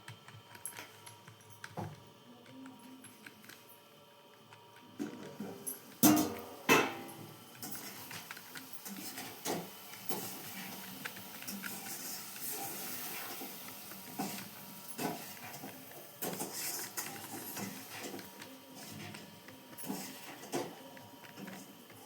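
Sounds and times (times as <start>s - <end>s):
typing on computer keyboard: 0.0s - 3.6s.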